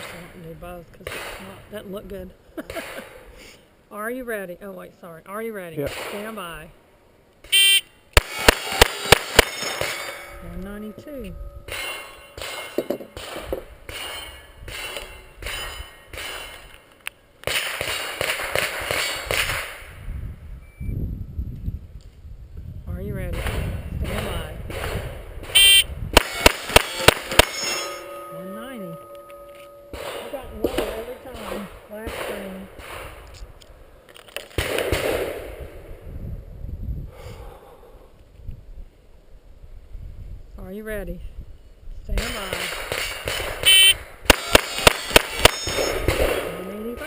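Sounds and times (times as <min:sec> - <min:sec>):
gunshots: 0:05.8 - 0:06.6, 0:07.4 - 0:10.4, 0:11.7 - 0:16.7, 0:17.4 - 0:20.0, 0:23.3 - 0:27.9, 0:29.9 - 0:33.2, 0:34.5 - 0:35.8, 0:42.2 - 0:47.0
pistol shots: 0:08.2 - 0:10.2, 0:17.4 - 0:19.8, 0:23.4 - 0:27.8, 0:29.9 - 0:33.2, 0:34.5 - 0:35.6, 0:42.2 - 0:46.6
steel targets ringing: 0:08.2 - 0:16.7, 0:25.6 - 0:31.7, 0:44.3 - 0:47.0.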